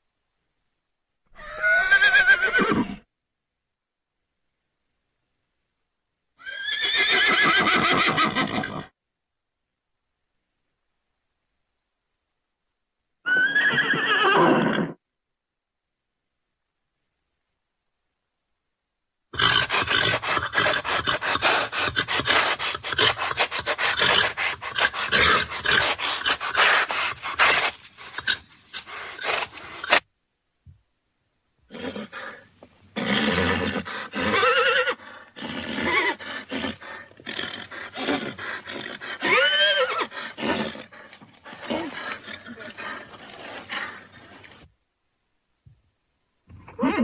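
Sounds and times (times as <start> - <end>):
horse whinny: 1.4 - 3.0, 6.4 - 8.9, 13.3 - 15.0, 19.4 - 30.0, 31.7 - 32.4, 33.0 - 44.6, 46.6 - 47.0
harsh rapid horse sound: 19.4 - 30.0
horse calls: 19.4 - 30.0, 31.7 - 44.6.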